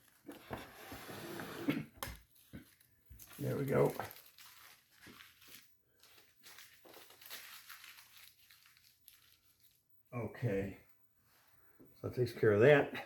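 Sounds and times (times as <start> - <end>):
paper rustling and crinkling: 2.0 - 9.8.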